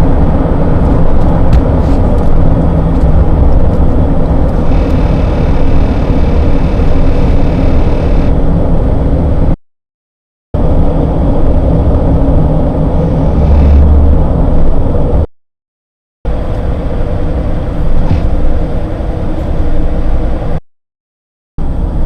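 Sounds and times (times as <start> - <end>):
low rumbling engine drone: 0.0 - 9.6, 10.6 - 15.3, 16.3 - 20.6, 21.6 - 22.0
steady tone: 4.4 - 9.6, 10.6 - 15.3.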